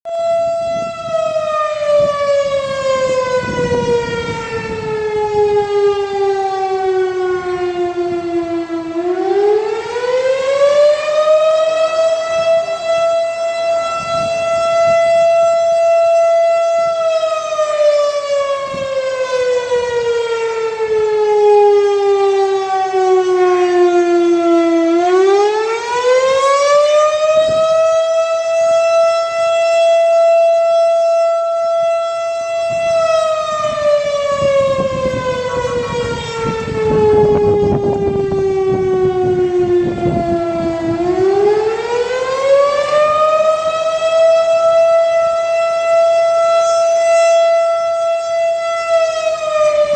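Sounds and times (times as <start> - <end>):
warning siren wailing: 0.0 - 49.9.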